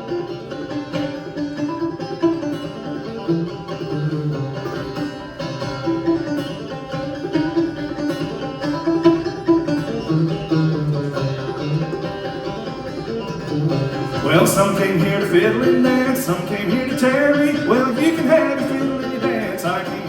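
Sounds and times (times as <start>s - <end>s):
banjo playing: 0.0s - 20.0s.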